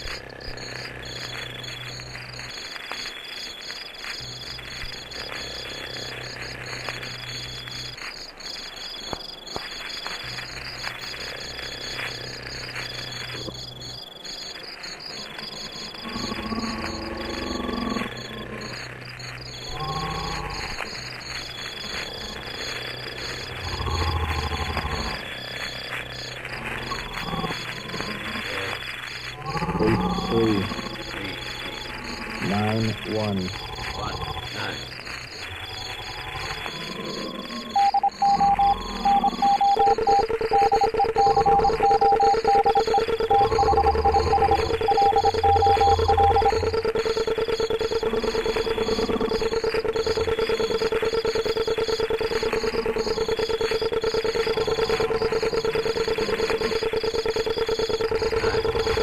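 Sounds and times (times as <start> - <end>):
insects trilling: 0.0 - 59.0
pulsing electronic tone: 9.8 - 59.0
voice-like calls: 26.4 - 34.9.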